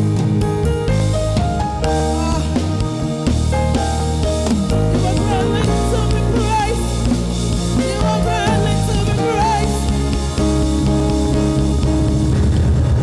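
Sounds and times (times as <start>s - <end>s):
bass: 0.0s - 13.0s
drum kit: 0.0s - 13.0s
guitars: 0.0s - 13.0s
worship band music: 0.0s - 13.0s
wavering melody line: 0.9s - 12.6s.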